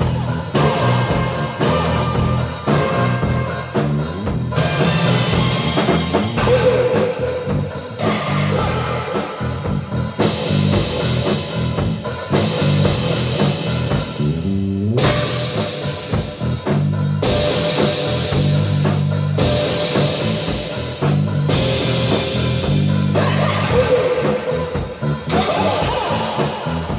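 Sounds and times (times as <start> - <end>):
guitar slide: 0.0 - 9.6
drum kit: 0.0 - 26.9
electric guitar chords: 0.0 - 26.9.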